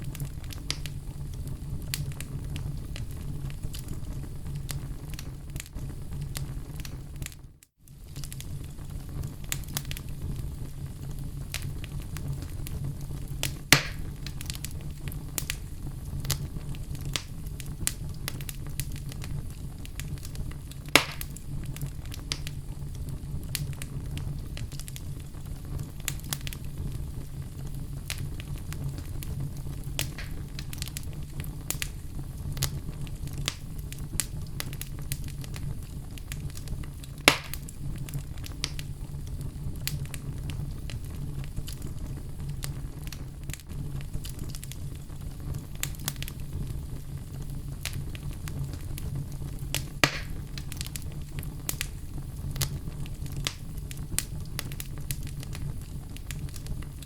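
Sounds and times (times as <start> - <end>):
fire crackling: 0.0 - 57.0
loud pops of burning logs: 0.0 - 57.0
low rumble of flame: 0.0 - 57.0.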